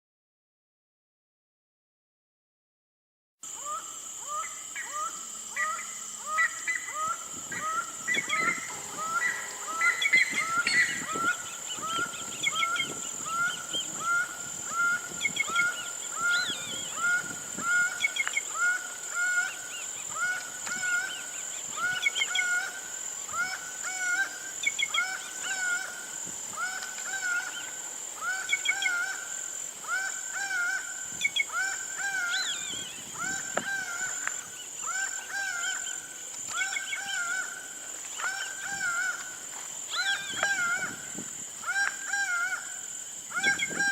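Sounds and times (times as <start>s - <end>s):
high-pitched insect whine: 3.4s - 43.9s
bird repeating short call: 3.6s - 34.2s.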